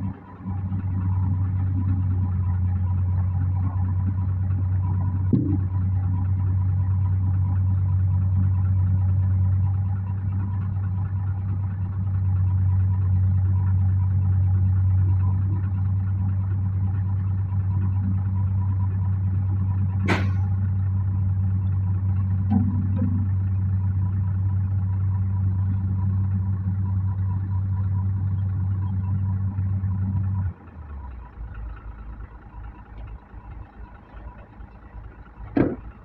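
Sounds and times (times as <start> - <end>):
excavator diesel engine: 0.0 - 36.0
short sharp clank: 20.0 - 20.6.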